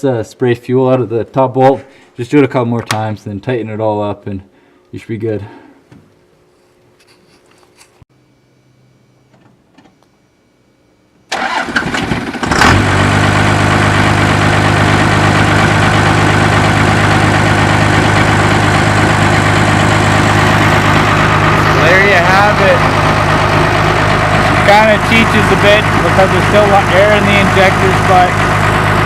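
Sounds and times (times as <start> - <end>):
diesel engine cranking: 11.3 - 29.0
diesel engine idling: 11.4 - 29.0.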